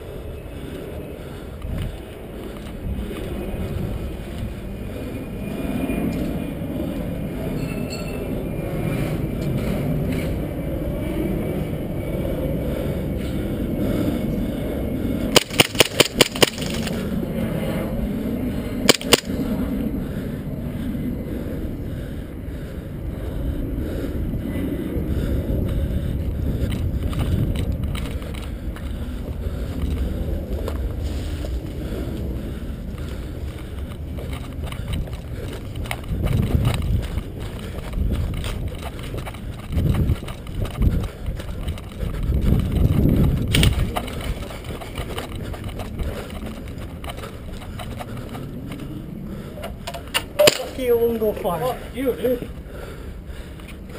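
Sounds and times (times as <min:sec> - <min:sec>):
wind rumble: 0:00.0 - 0:53.9
footsteps on rough ground: 0:15.4 - 0:17.0, 0:26.5 - 0:52.7
sharp snaps and clicks: 0:15.4 - 0:17.0, 0:18.9 - 0:19.4.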